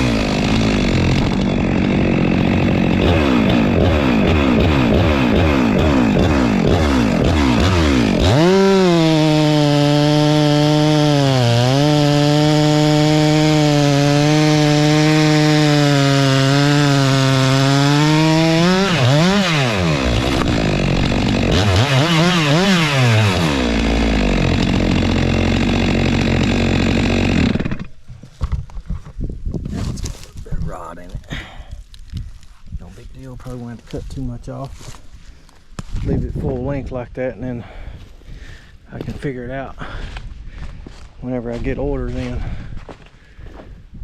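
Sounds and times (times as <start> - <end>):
chainsaw cutting a log: 0.0 - 28.1.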